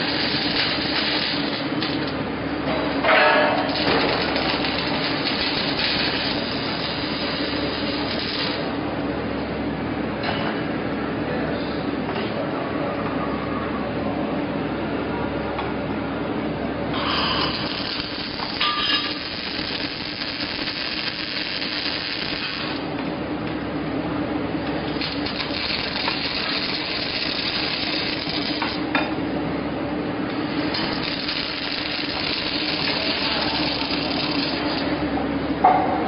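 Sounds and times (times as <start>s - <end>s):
welding arc crackling: 0.0s - 8.9s, 16.9s - 23.7s, 24.5s - 29.4s, 30.1s - 35.2s
steady machine hum: 0.0s - 36.0s.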